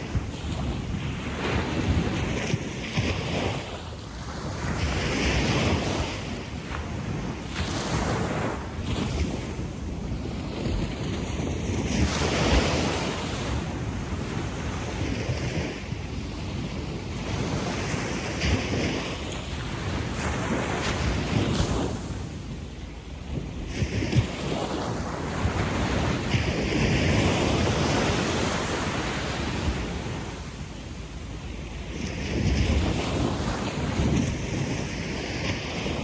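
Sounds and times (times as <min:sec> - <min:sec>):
small waves washing on sand: 0:00.0 - 0:22.6, 0:23.2 - 0:36.0
wind rumbling on microphone: 0:00.0 - 0:36.0.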